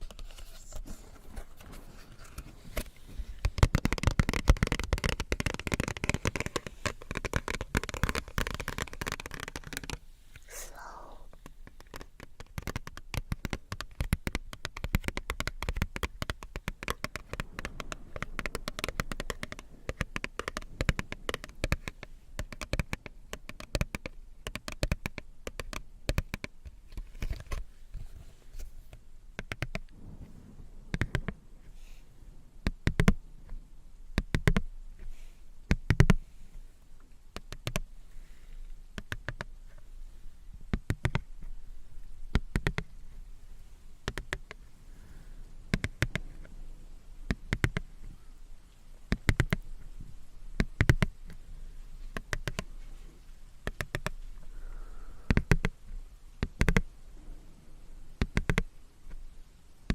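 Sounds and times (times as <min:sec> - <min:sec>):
small crackles and clicks: 0:00.0 - 0:59.9.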